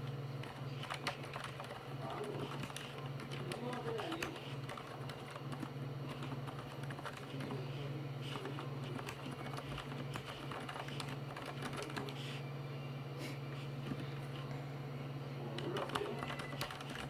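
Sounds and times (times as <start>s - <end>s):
steady low hum: 0.0s - 17.0s
soft keyboard typing: 0.4s - 7.6s, 8.2s - 12.4s, 15.5s - 17.0s.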